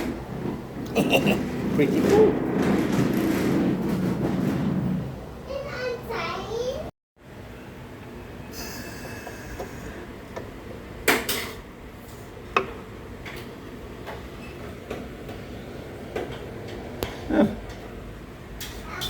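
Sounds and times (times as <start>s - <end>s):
sharp knocks and clatters: 0.0s - 5.2s
steady background noise: 0.0s - 19.0s.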